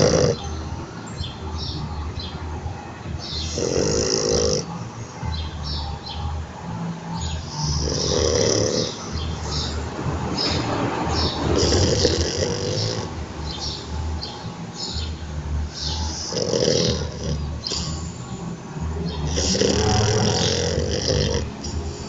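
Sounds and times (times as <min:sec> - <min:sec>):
dog snoring: 0:00.0 - 0:00.4, 0:03.4 - 0:04.7, 0:07.4 - 0:09.7, 0:11.5 - 0:13.1, 0:15.8 - 0:18.2, 0:19.2 - 0:22.0
dog breathing and snuffling: 0:10.4 - 0:13.8, 0:15.7 - 0:18.3, 0:19.2 - 0:22.0.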